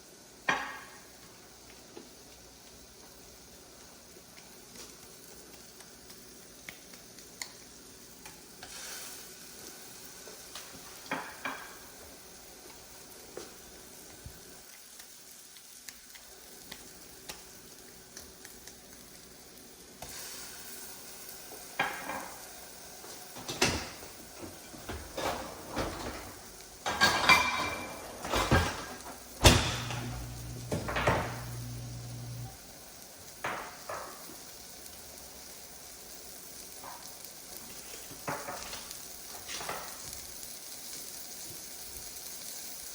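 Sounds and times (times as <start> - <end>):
food sizzling in a pan: 0.0 - 42.9
utensils clinking against pans: 23.4 - 32.5
low hum: 29.9 - 32.6.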